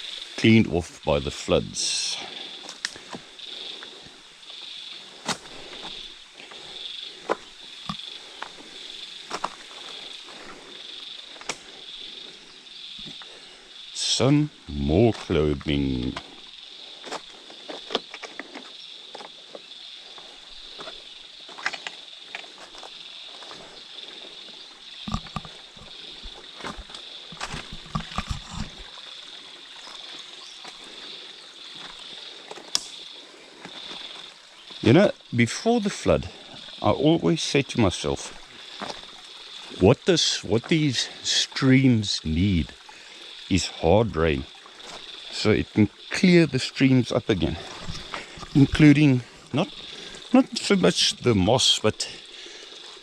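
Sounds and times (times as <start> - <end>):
insect buzzing call: 0.0 - 53.0
footsteps on stream rocks: 2.6 - 4.2, 5.2 - 11.7, 17.0 - 19.6, 20.2 - 29.0, 29.8 - 34.8, 38.3 - 39.8, 44.7 - 45.3, 47.6 - 51.2
footsteps on rocks: 9.2 - 10.6, 17.0 - 19.6, 20.7 - 23.8, 25.1 - 28.9, 47.6 - 48.8.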